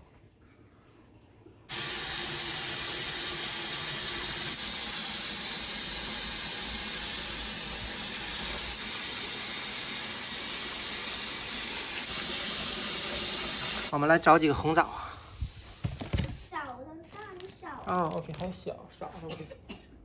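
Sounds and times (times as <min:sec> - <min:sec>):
tap water running into sink: 0:01.7 - 0:13.9.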